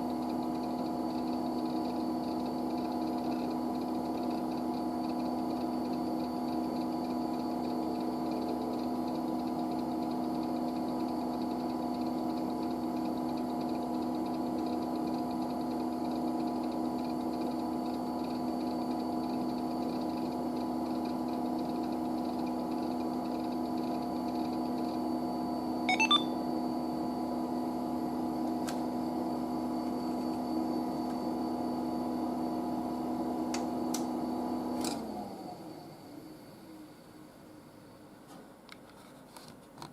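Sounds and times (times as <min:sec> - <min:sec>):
computer humming: 0:25.9 - 0:26.5.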